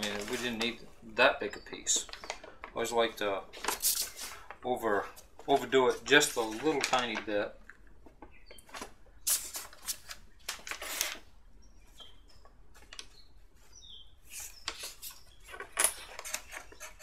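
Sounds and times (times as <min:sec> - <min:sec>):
wood pieces rustling and knocking: 0:00.0 - 0:00.8.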